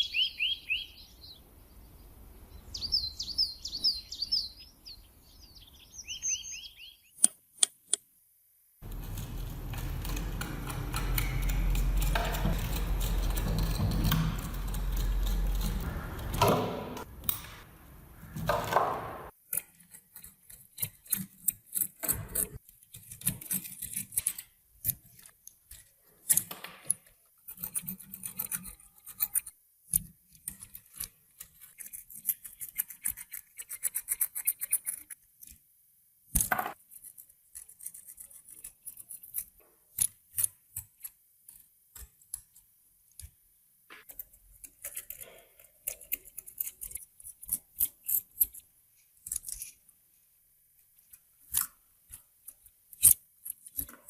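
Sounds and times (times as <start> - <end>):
metal grinder parts clicking: 8.8 - 17.6
sharp knock: 16.2 - 17.6.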